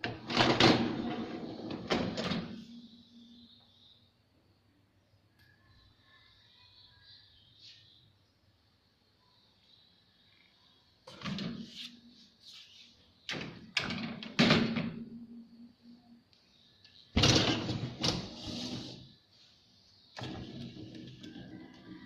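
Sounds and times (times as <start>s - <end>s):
dishwasher door and racks clattering: 17.2s - 18.9s.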